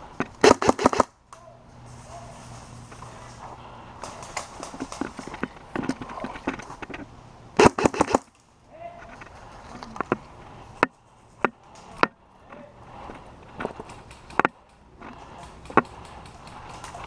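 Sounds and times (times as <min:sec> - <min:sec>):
sharp cracks: 0:00.2 - 0:01.4, 0:07.6 - 0:08.5, 0:13.7 - 0:17.0
airsoft rifle firing: 0:00.4 - 0:01.1, 0:07.6 - 0:08.3.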